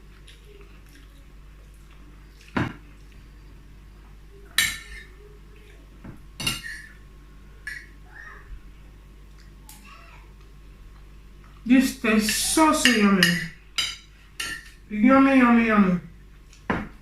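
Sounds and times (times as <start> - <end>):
cutlery clinking on a plate: 4.6 - 5.1, 12.3 - 14.8.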